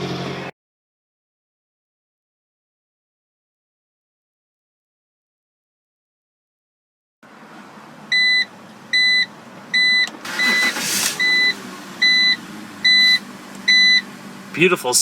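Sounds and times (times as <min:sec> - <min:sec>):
car engine starting: 0:07.5 - 0:15.0
electronic warning chime beeping: 0:08.2 - 0:14.0
engine idling: 0:10.2 - 0:15.0.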